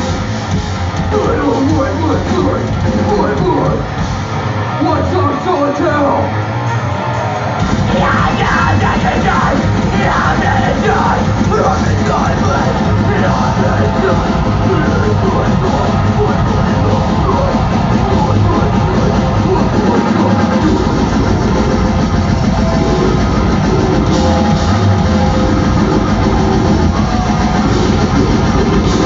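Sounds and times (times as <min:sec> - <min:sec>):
loud rock music: 0:00.0 - 0:29.0.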